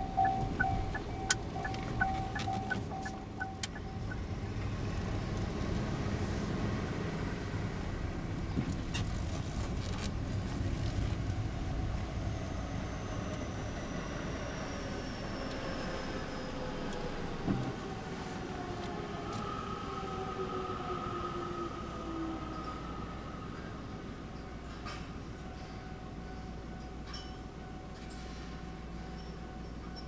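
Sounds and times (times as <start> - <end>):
level crossing alarm bell: 0.0 - 4.2
train rumbling past: 0.0 - 8.6, 10.1 - 30.0.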